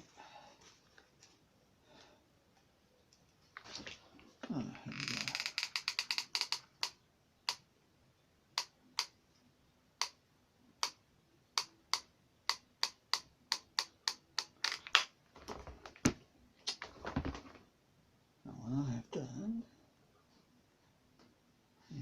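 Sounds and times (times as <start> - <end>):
sharp dry clicks: 5.1 - 7.7, 8.6 - 9.2, 11.6 - 15.1.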